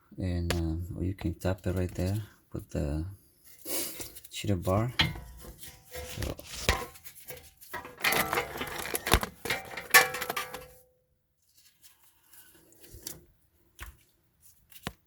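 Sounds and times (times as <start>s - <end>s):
metal tools clanking: 4.7s - 10.8s.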